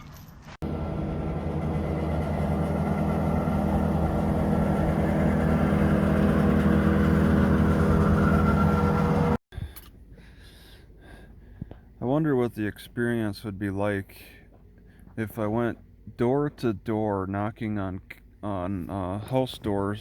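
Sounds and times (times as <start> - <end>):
vehicle engine idling: 0.6 - 9.4.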